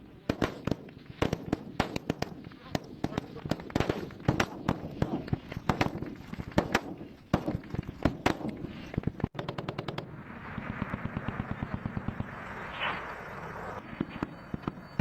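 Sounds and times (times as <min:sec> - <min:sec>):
machine-gun fire: 0:00.3 - 0:15.0
single gunshots: 0:09.4 - 0:15.0.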